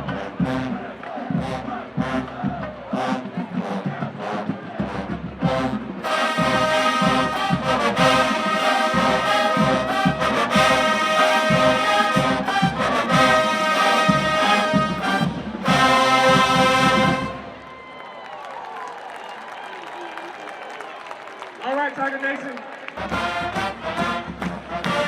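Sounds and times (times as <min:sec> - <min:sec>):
marching band playing: 0:00.0 - 0:17.6, 0:23.0 - 0:25.0.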